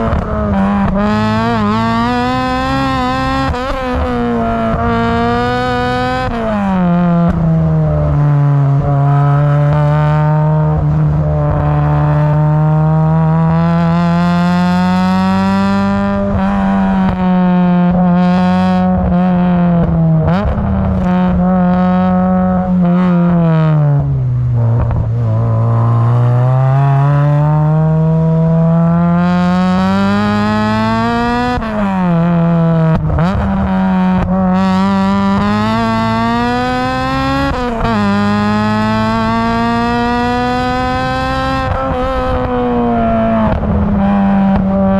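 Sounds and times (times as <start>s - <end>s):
car engine revving: 0.0s - 44.9s.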